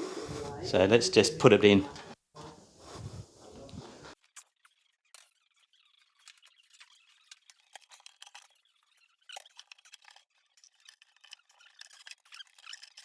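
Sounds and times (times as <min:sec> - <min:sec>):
dishwasher squeaks and scrapes: 0:04.2 - 0:13.0.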